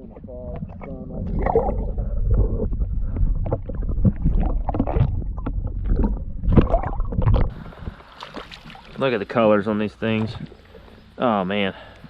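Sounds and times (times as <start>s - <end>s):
wind rumble on microphone: 0.0s - 8.0s
water splashing: 0.0s - 11.1s.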